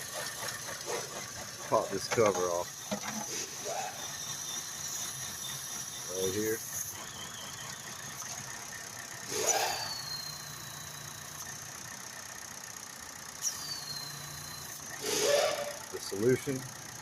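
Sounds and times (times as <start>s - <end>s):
car engine idling roughly: 0.0s - 17.0s
steady high whistle: 3.4s - 8.3s, 9.3s - 11.5s, 13.4s - 16.2s
engine surge with falling tone: 13.4s - 16.6s.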